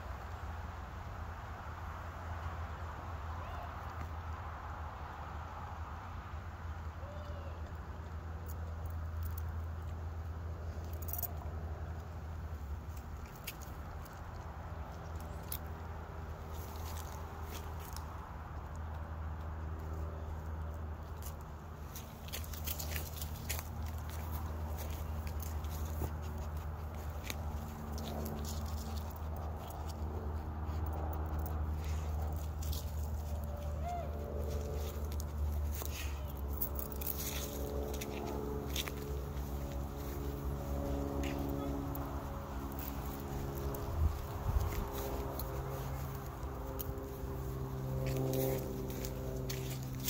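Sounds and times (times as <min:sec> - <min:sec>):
steady low hum: 0:08.1 - 0:50.0
footsteps: 0:21.0 - 0:50.0.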